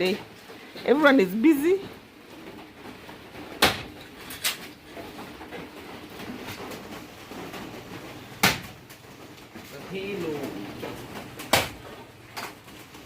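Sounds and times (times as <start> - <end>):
firewood chopping strikes: 8.4 - 8.7, 11.4 - 11.8.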